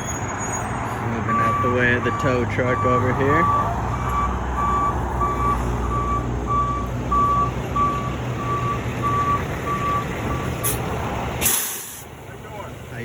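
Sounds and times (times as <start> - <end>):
truck engine rumble: 0.0 - 13.0
reverse alarm beeping: 1.3 - 10.6.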